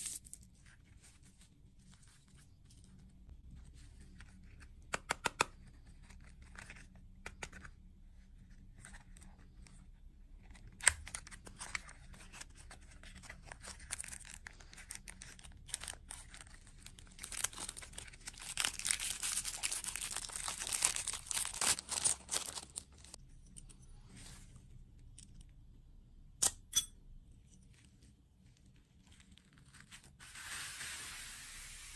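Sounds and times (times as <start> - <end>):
packaging crinkling and tearing: 13.0 - 23.2.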